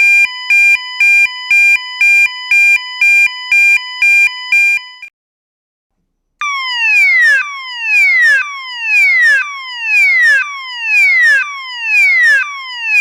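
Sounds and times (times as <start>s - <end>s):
siren falling sweep: 6.4s - 13.0s.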